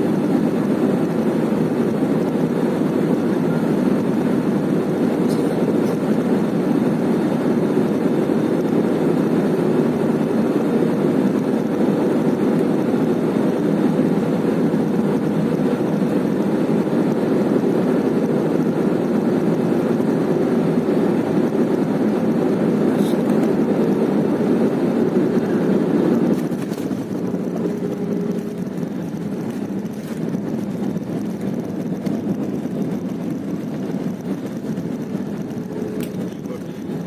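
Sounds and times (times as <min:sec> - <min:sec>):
airliner cabin rumble: 0:00.0 - 0:37.0.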